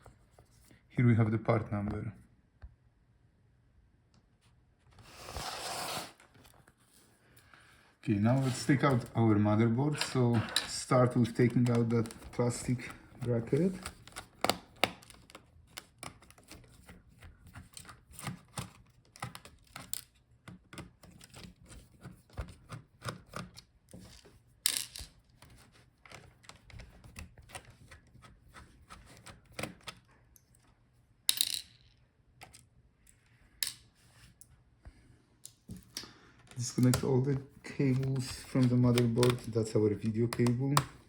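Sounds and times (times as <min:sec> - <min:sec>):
clicks and taps of tools and plastic: 0:10.0 - 0:24.1, 0:24.7 - 0:28.3, 0:35.4 - 0:37.1, 0:37.9 - 0:39.6, 0:40.3 - 0:41.0.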